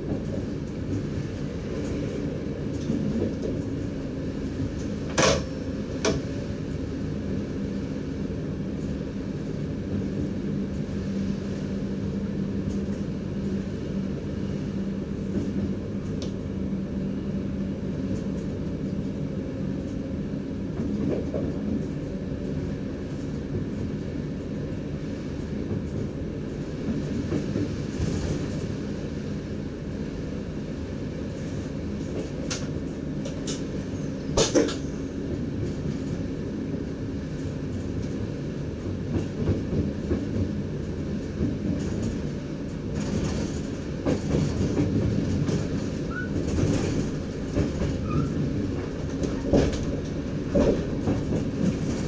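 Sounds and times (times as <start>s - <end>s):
train wheels rumbling: 0.0s - 52.0s.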